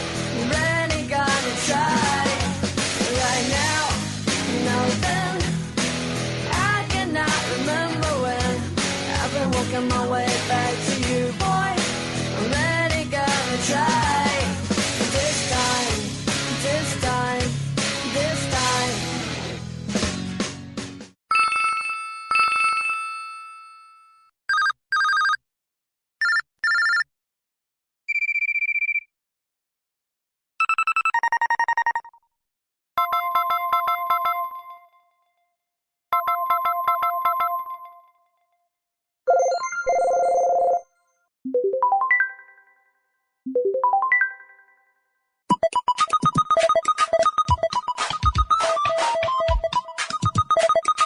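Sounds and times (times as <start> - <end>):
electronic ringtone tune: 24.0 - 25.4, 26.2 - 27.0, 30.6 - 32.2, 33.0 - 35.0, 36.1 - 38.2, 39.3 - 42.9, 43.5 - 44.9, 45.5 - 51.0
short phone beeps: 28.1 - 29.1.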